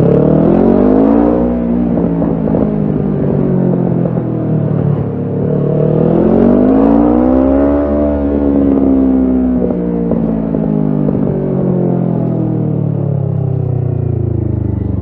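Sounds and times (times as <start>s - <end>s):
motorcycle engine revving: 0.0s - 15.0s.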